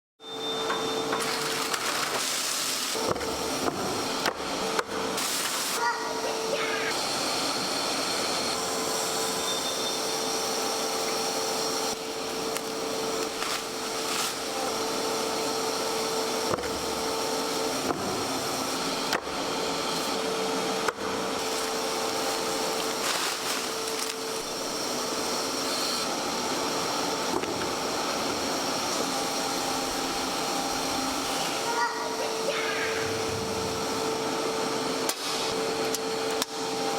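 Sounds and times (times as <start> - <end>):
meat-processing machine motor whine: 0.2 - 36.9.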